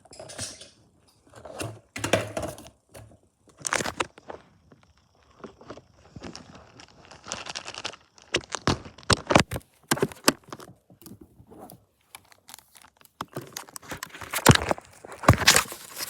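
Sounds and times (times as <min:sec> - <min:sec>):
packaging crinkling and tearing: 0:03.5 - 0:04.2, 0:05.6 - 0:16.0.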